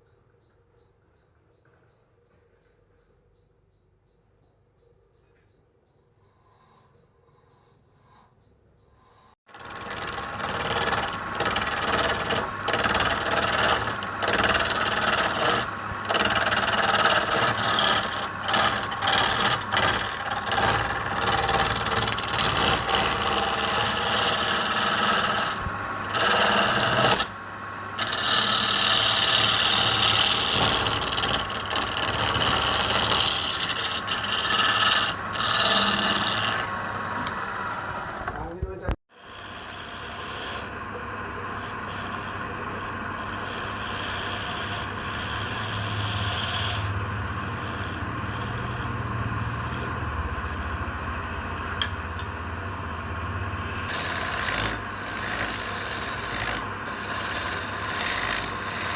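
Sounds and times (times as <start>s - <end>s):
tool rasping against wood: 9.5s - 27.4s, 28.0s - 36.7s, 39.2s - 40.8s, 41.4s - 50.8s, 53.9s - 58.9s.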